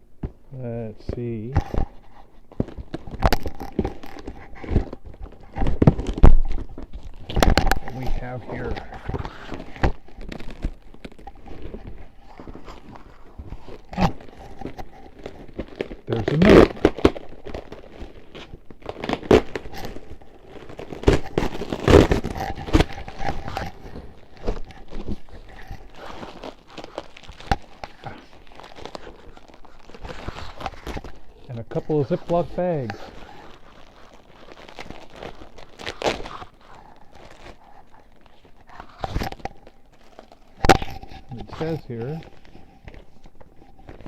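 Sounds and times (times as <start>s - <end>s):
packing rustling and crinkling: 0.2s - 44.0s
knocks and scrapes: 18.9s - 34.1s.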